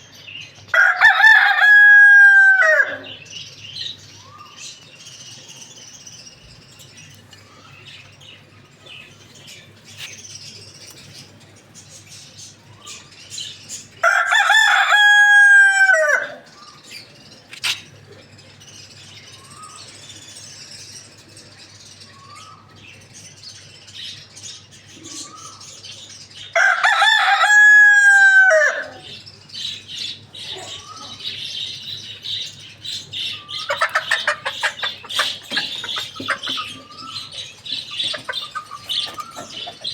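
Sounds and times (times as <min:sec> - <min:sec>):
rooster crowing: 0:00.7 - 0:03.2, 0:14.0 - 0:16.5, 0:26.6 - 0:29.1.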